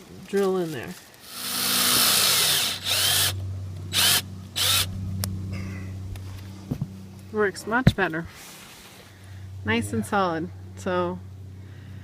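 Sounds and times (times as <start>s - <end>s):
low motor hum: 1.0s - 12.0s
power drill driving a screw: 1.2s - 4.9s.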